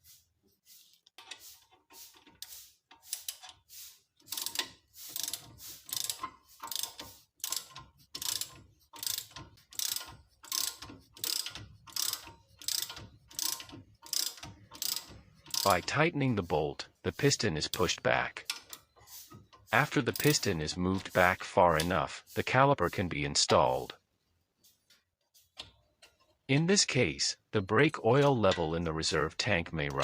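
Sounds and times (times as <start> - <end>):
wrench clicking on bolt: 2.2 - 3.6, 4.2 - 15.9.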